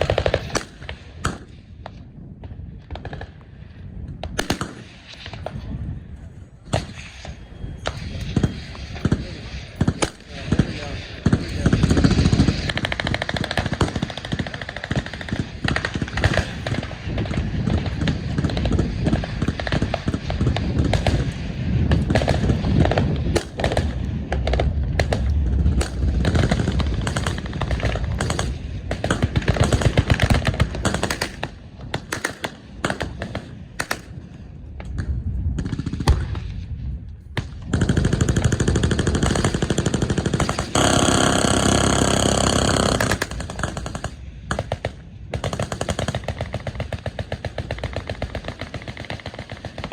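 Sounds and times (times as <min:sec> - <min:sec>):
machine gun fire: 0:25.8 - 0:34.1, 0:37.4 - 0:49.9.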